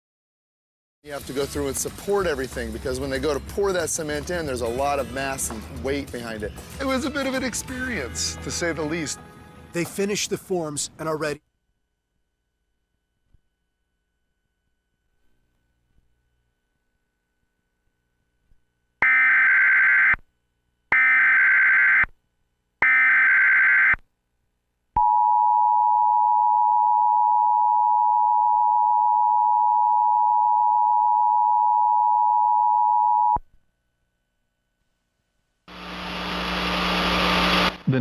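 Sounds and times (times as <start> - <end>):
steady attention tone: 35.7 - 38.0.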